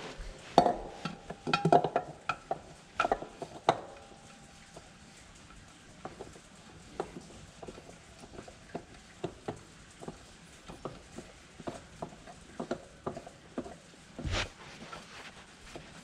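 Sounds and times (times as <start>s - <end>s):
scraping rustle: 14.2s - 16.0s.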